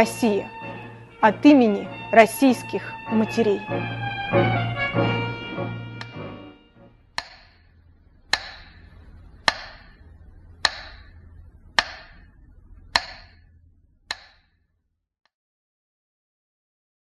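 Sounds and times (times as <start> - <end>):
faint low hum: 6.7 - 15.0
metronome ticking: 7.2 - 7.7, 8.3 - 12.3, 12.9 - 13.4, 14.1 - 14.4.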